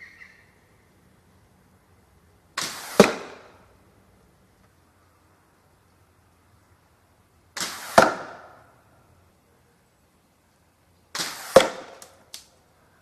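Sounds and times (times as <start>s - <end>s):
slingshot rushing release: 2.6s - 3.4s, 7.6s - 8.4s, 11.1s - 12.2s
projectile hitting plywood: 2.6s - 3.5s, 7.6s - 8.6s, 11.1s - 12.2s.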